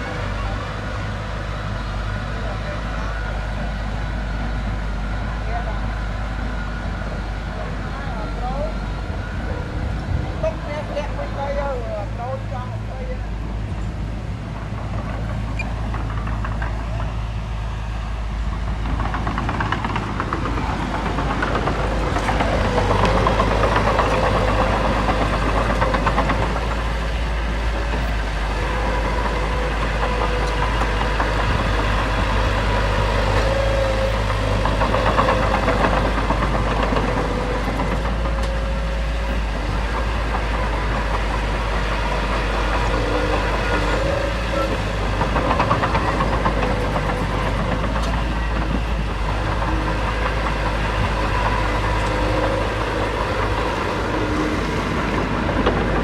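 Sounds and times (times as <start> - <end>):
heavy diesel machinery running: 0.0 - 56.0.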